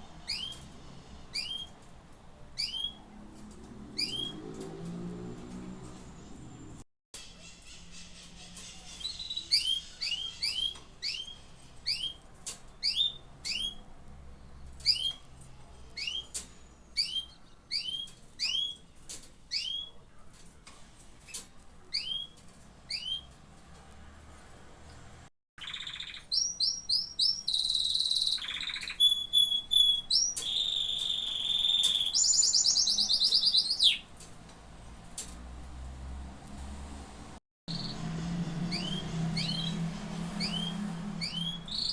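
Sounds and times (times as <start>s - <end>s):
canary trilling song: 0.0s - 3.2s, 3.8s - 5.0s, 5.9s - 20.1s, 21.2s - 23.4s, 25.6s - 34.2s, 37.7s - 41.9s
canaries chirping: 0.0s - 24.0s, 25.6s - 35.4s, 37.7s - 41.9s.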